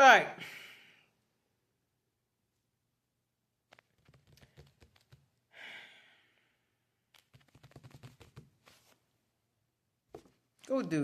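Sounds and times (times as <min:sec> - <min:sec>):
person sighing: 0:05.5 - 0:06.5.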